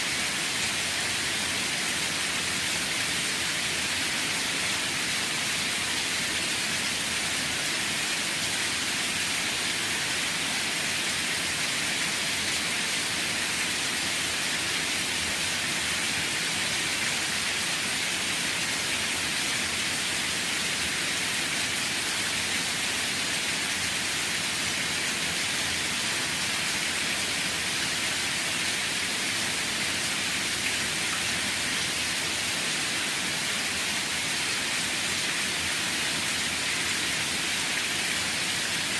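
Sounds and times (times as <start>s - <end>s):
steady rain falling: 0.0s - 38.9s.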